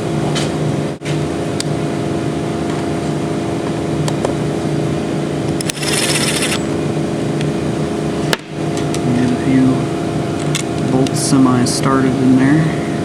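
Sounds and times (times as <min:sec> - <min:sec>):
steady mechanical hum: 0:00.0 - 0:13.0.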